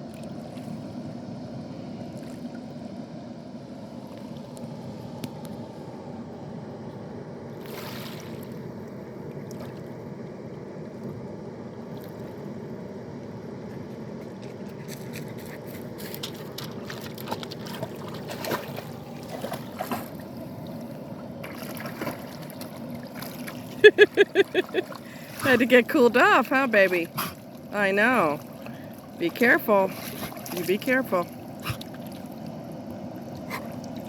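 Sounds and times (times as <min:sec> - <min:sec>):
short sharp splashes: 0:28.2 - 0:32.2.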